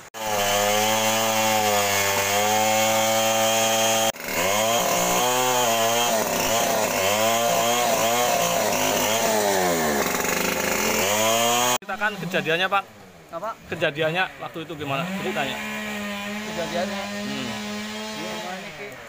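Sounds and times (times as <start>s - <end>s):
chainsaw running: 0.0s - 12.6s, 14.7s - 19.0s.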